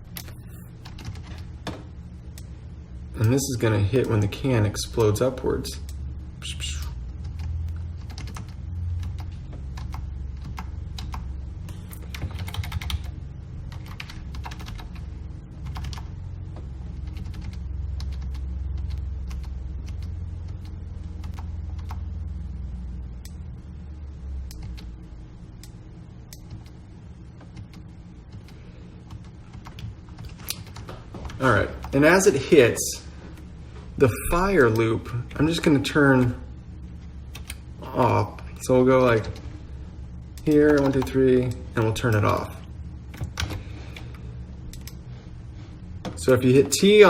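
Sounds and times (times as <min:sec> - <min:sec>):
low steady hum: 0:00.0 - 0:47.0
keyboard keystrokes and clicks: 0:00.1 - 0:01.5, 0:06.8 - 0:13.1, 0:13.7 - 0:15.0, 0:15.6 - 0:16.1, 0:17.0 - 0:22.0, 0:27.4 - 0:32.0, 0:37.3 - 0:37.6, 0:40.4 - 0:42.4, 0:43.1 - 0:45.0.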